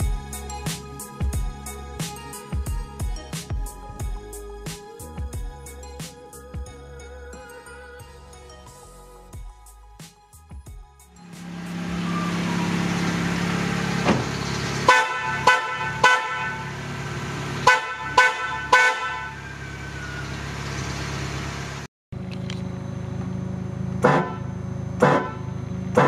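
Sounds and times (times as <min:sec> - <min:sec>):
car horns tooting: 0:14.7 - 0:17.0, 0:17.6 - 0:20.3, 0:24.0 - 0:26.0.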